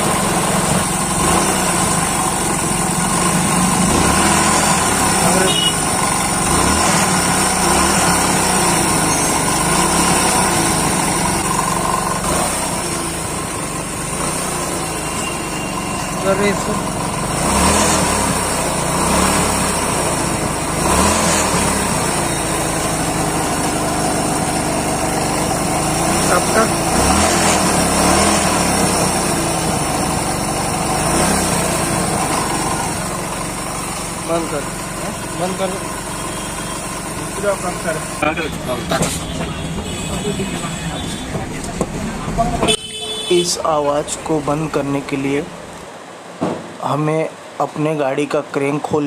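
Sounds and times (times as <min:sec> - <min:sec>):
rattling motorcycle engine: 0:00.0 - 0:46.0.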